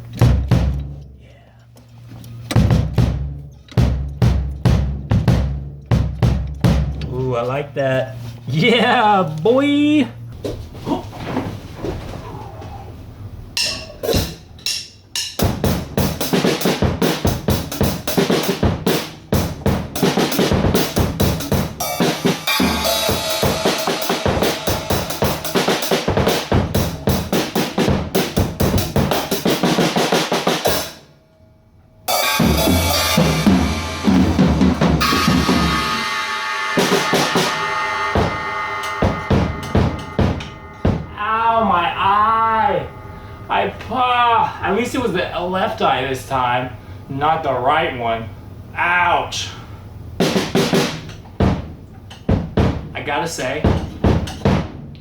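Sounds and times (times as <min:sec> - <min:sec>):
drum kit played fast: 0:00.0 - 0:01.0, 0:02.5 - 0:07.1, 0:13.6 - 0:31.1, 0:32.1 - 0:45.1, 0:50.2 - 0:55.0.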